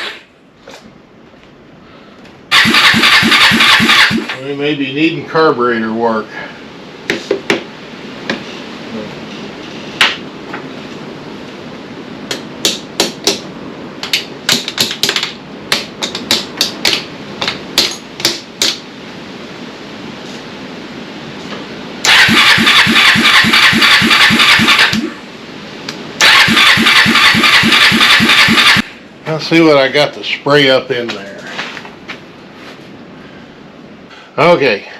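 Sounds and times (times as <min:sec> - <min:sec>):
engine cranking on starter: 0:02.5 - 0:04.4, 0:22.0 - 0:25.0, 0:26.2 - 0:28.8.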